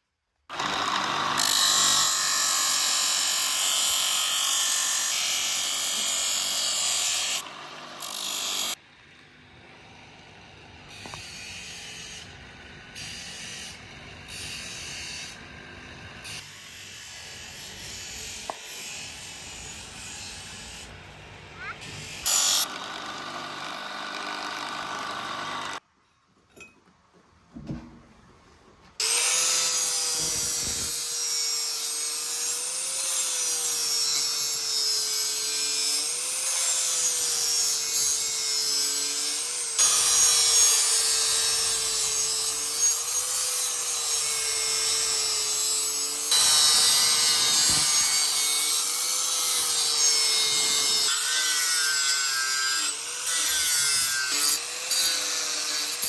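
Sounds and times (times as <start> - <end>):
electric power tool motor hum: 0.5 - 8.8, 21.8 - 25.8
high rasping of material being cut: 0.5 - 8.8, 21.6 - 25.8, 29.0 - 56.0.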